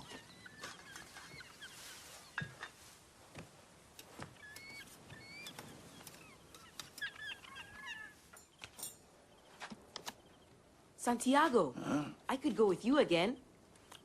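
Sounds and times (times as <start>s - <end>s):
faint bird chirping: 0.0s - 2.8s, 4.0s - 11.2s.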